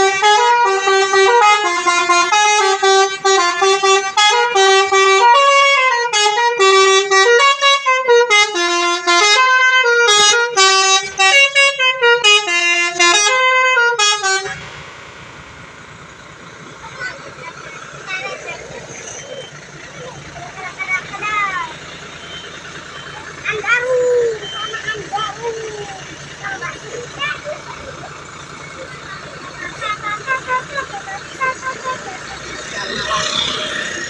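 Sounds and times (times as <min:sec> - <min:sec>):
musical bus horn melody: 0:00.0 - 0:14.8, 0:28.0 - 0:33.9.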